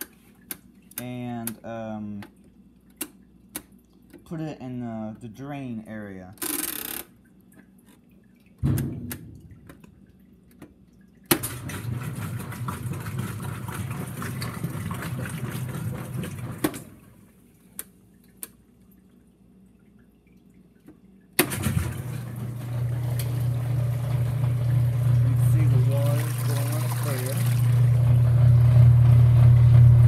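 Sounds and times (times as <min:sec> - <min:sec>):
washing machine draining water: 0:07.1 - 0:30.0
thump: 0:08.6 - 0:09.5.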